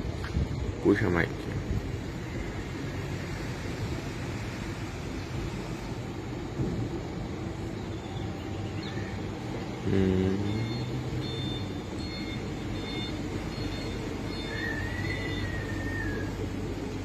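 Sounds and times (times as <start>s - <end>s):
ferry engines rumbling: 0.0s - 17.0s
faint high beeps: 9.8s - 15.8s.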